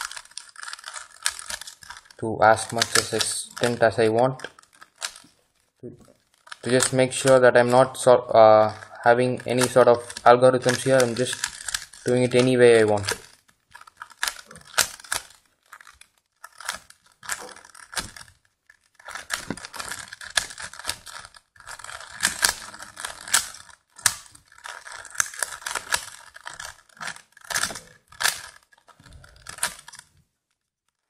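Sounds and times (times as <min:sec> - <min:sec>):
puzzle cube clicking and rasping: 0:00.0 - 0:31.0.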